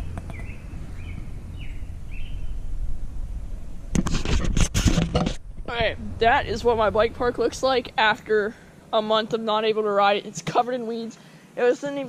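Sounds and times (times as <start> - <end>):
bird chirping: 0.0 - 2.7
steady low rumble: 0.0 - 10.3
rustling and knocking: 3.9 - 6.0.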